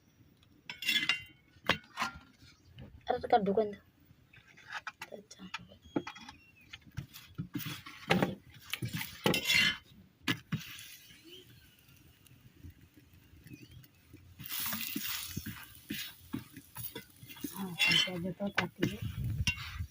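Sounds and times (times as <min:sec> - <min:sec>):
metal utensils clinking on a pan: 0:00.7 - 0:02.2, 0:09.2 - 0:09.8, 0:14.4 - 0:19.9
utensil scraping a pan: 0:00.7 - 0:02.6, 0:06.9 - 0:11.6, 0:14.4 - 0:19.9.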